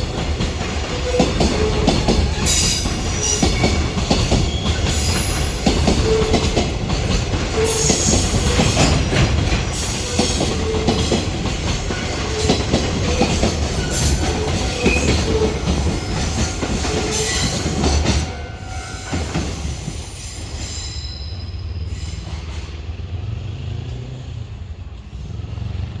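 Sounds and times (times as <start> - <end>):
train wheels clattering over rail joints: 0.0 - 18.4
train rumble: 0.0 - 26.0
wheel squeals: 0.9 - 6.5, 11.8 - 18.0, 18.6 - 22.5.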